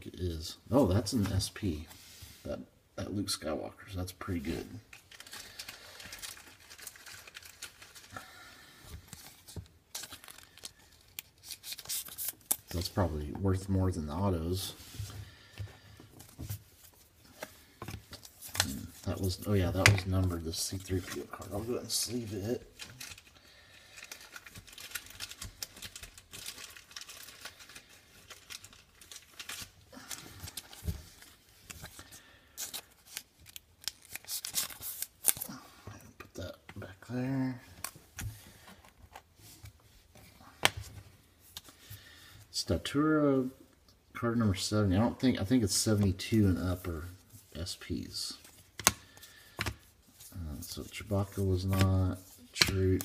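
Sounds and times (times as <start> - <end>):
cards rustling and clicking: 4.3 - 8.2, 8.8 - 13.1, 15.0 - 35.5, 37.7 - 41.9, 45.0 - 53.0.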